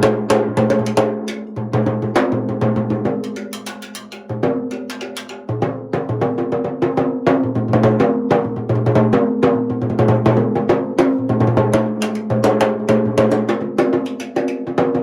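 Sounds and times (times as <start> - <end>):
timbales played with sticks: 0.0 - 2.4.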